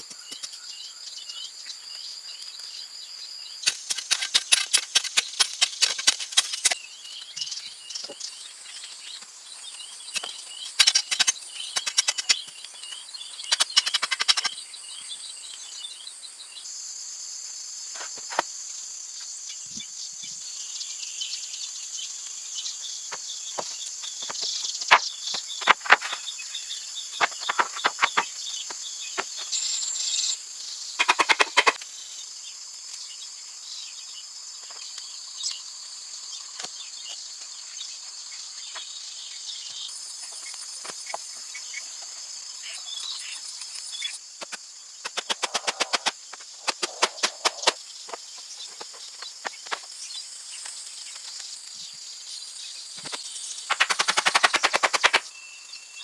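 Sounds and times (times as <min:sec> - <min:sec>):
bird calls: 0:09.8 - 0:15.1, 0:23.1 - 0:31.8, 0:45.0 - 0:49.9, 0:53.0 - 0:56.0
insect trilling: 0:23.2 - 0:31.8, 0:42.7 - 0:49.9, 0:53.0 - 0:55.4.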